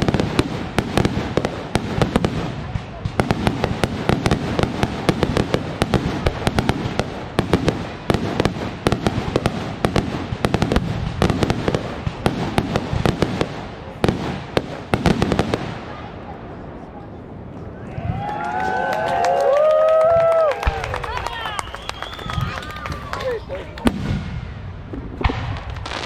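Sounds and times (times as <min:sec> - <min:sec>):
fireworks bangs and crackling: 0:00.0 - 0:26.0.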